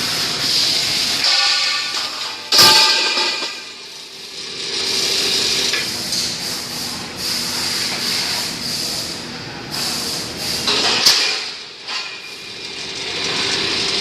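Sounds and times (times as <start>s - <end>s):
pipe-cutting machine rasping: 4.2s - 5.9s, 12.0s - 14.0s.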